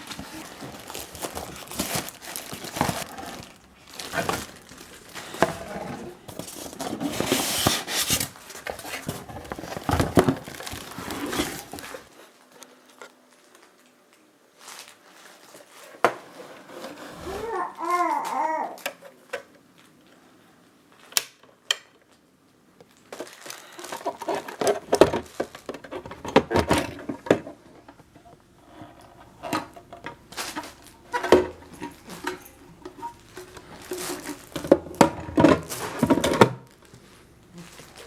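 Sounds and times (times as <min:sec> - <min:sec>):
hard objects clicking and clattering: 0:00.0 - 0:12.1, 0:22.9 - 0:36.9.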